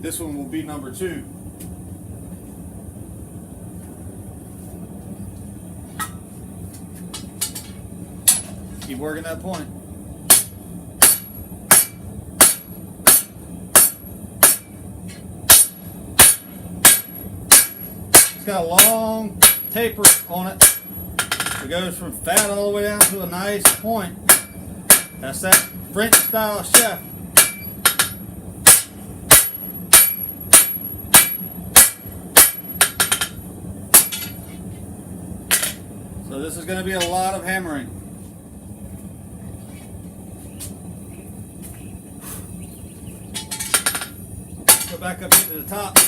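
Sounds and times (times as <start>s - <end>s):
hammer striking steel on anvil: 7.1s - 9.7s, 10.3s - 21.6s, 22.3s - 34.5s, 35.5s - 35.8s, 43.4s - 46.0s.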